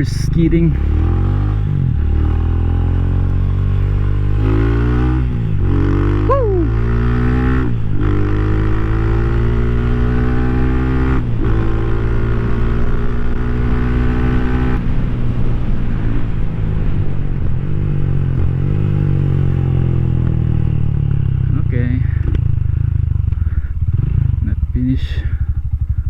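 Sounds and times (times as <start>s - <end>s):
motorcycle engine shifting up: 16.9s - 26.0s.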